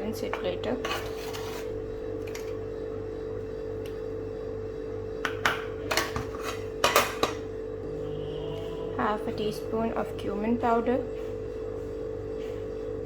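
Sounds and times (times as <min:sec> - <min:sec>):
soft background music: 0:07.8 - 0:13.0.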